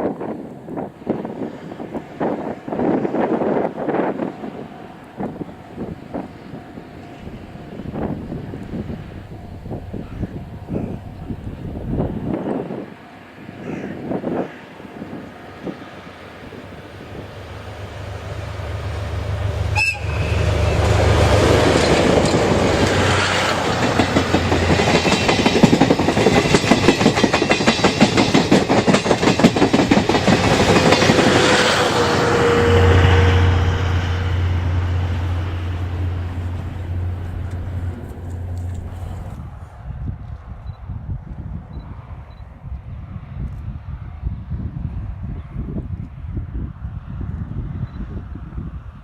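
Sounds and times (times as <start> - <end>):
locomotive engine droning: 1.8 - 39.8
wheels clattering over rail joints: 16.4 - 32.0.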